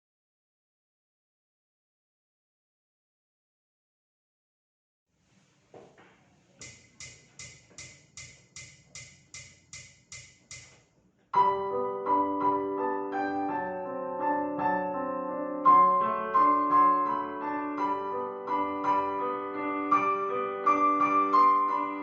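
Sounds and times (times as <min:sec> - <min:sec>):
soft ticking beat: 0:06.6 - 0:10.8
piano chords and melody: 0:11.4 - 0:22.0.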